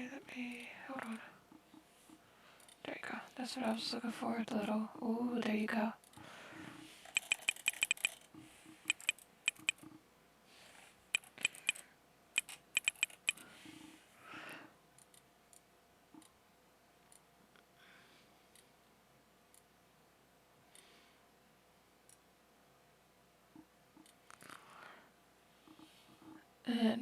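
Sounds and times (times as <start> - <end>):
keyboard typing and mouse clicks: 0.5 - 2.8, 6.0 - 10.0, 11.1 - 11.8, 12.4 - 14.0, 15.0 - 16.4, 23.5 - 24.6, 25.6 - 26.4.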